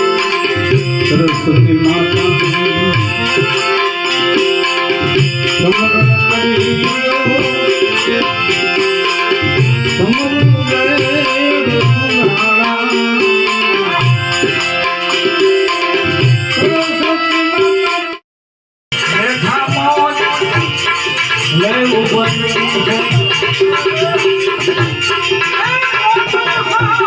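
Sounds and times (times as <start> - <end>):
hand drum beats: 18.9 - 27.0.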